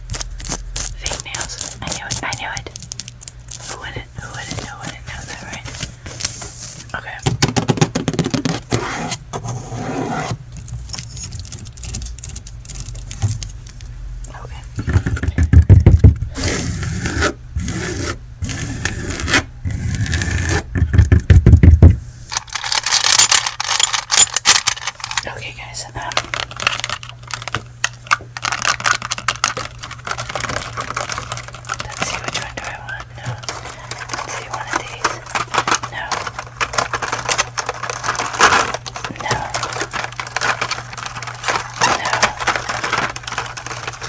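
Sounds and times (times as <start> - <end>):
low steady hum: 0.0 - 44.0
fingernails scratching hard surface: 8.5 - 10.4, 16.3 - 20.7.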